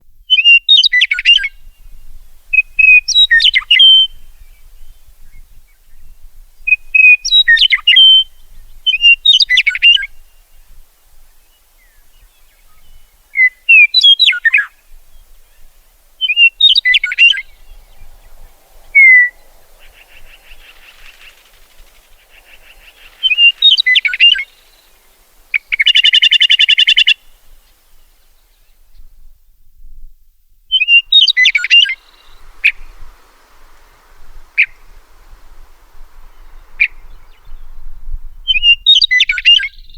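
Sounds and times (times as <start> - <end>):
meadowlark fluty warbled song: 0.1 - 29.3, 30.7 - 39.9.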